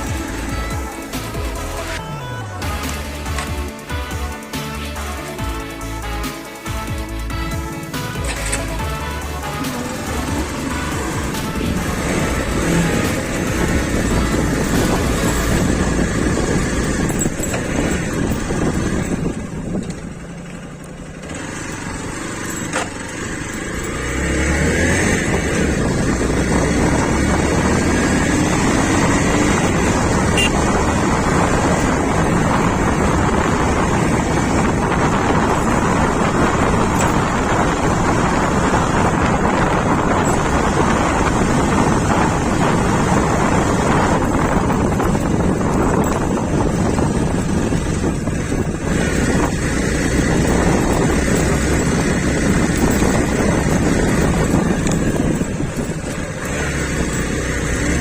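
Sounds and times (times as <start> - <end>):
motorcycle engine revving: 0.0 - 58.0
wind buffeting microphone: 10.0 - 20.5, 23.3 - 58.0.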